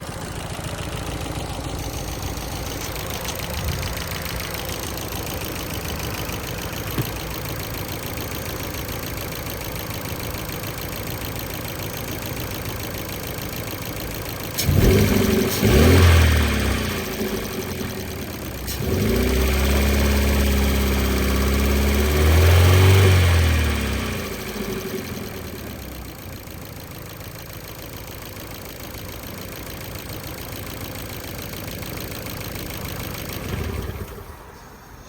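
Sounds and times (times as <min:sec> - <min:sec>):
deep engine bursts: 0:00.0 - 0:11.8, 0:13.7 - 0:26.3
car engine idling with ticking: 0:00.0 - 0:35.0.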